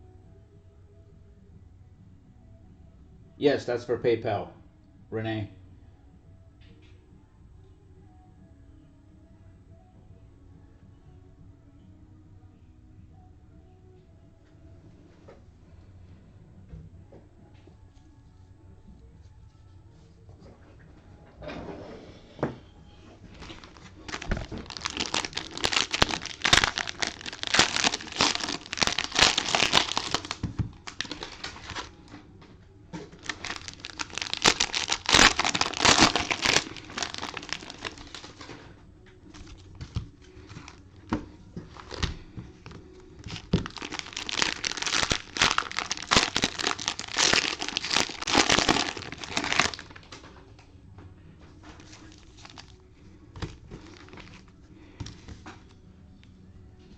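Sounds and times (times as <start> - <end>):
plastic wrapping crackling: 23.3 - 32.1, 33.1 - 38.4, 39.3 - 50.0, 51.8 - 52.8, 53.4 - 54.5.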